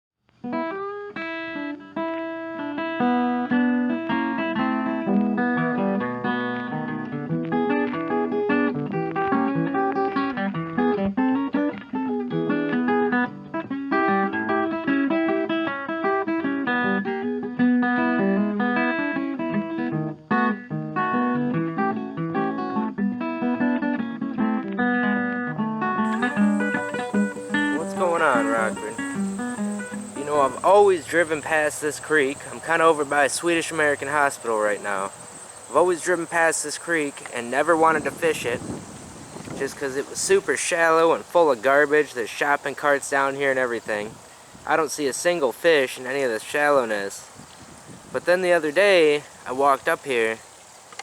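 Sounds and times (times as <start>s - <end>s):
acoustic guitar music: 0.4s - 47.3s, 48.2s - 51.0s.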